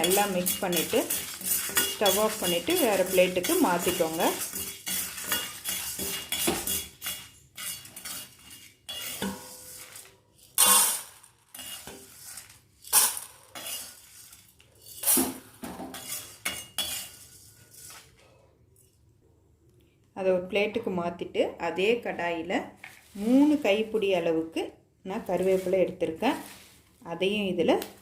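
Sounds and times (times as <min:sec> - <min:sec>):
spoon scraping a pan: 0:00.0 - 0:18.2.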